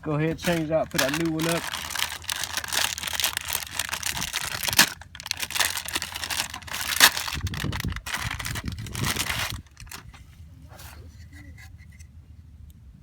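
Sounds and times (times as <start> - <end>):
plastic crinkling and rustling: 0.0 - 10.2.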